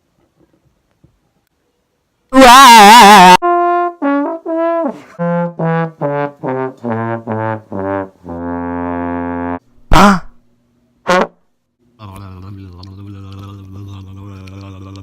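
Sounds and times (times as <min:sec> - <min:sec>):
person singing wah: 0:02.4 - 0:03.4, 0:12.0 - 0:15.0
descending trombone-like notes: 0:02.4 - 0:10.2.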